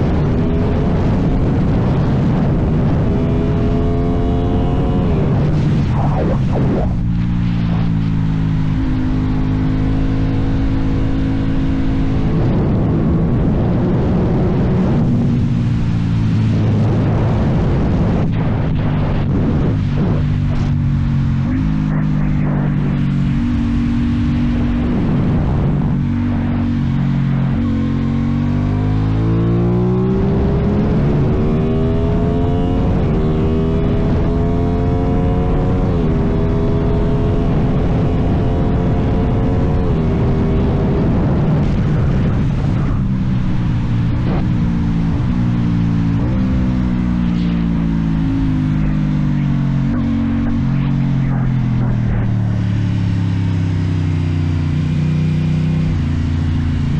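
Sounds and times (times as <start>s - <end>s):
motorcycle engine running: 2.7s - 29.2s, 40.2s - 56.9s.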